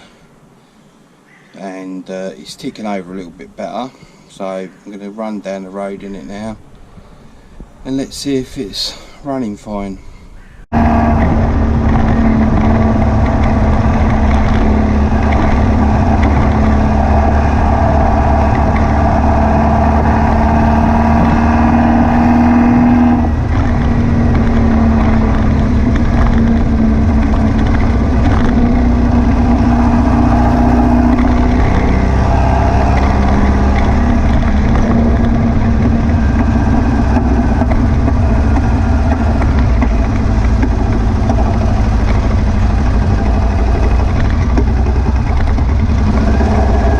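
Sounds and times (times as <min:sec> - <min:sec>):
misfiring car engine driving: 0:10.7 - 0:46.9.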